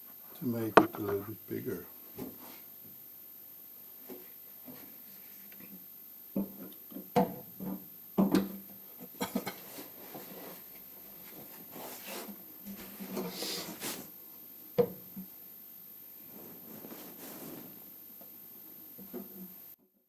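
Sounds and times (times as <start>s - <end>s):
tool scraping: 0.8s - 1.2s.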